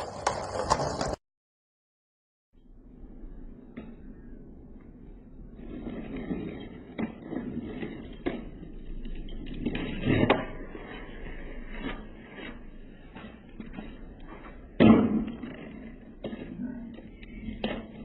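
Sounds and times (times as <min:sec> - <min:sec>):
skateboard clacks: 0:00.0 - 0:01.2, 0:06.2 - 0:18.0
skateboard wheels rolling on pavement: 0:00.0 - 0:01.2, 0:02.9 - 0:18.0.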